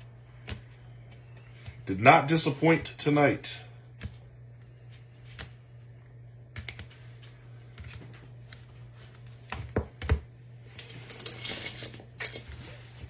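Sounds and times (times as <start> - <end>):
steady low hum: 0.0 - 13.0
cards clicking and tapping: 0.4 - 1.8, 4.0 - 5.6, 6.5 - 8.7.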